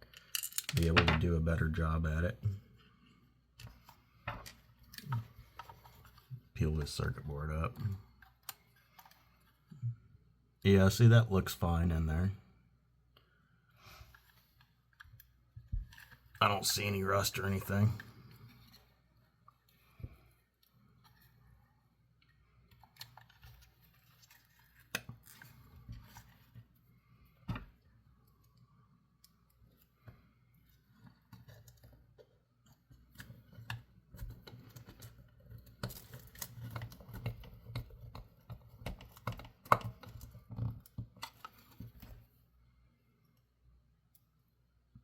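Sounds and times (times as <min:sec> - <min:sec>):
hands handling plastic toy: 0:03.5 - 0:06.5, 0:07.7 - 0:09.7, 0:13.9 - 0:42.4.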